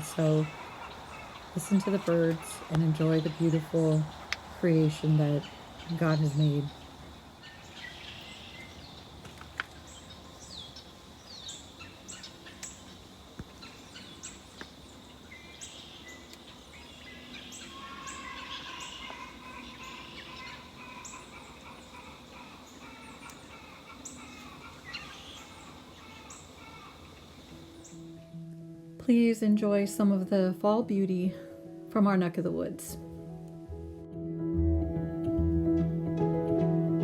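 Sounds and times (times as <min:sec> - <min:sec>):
short high bird calls: 0:15.3 - 0:28.0
lower wavering bird call: 0:15.3 - 0:28.1.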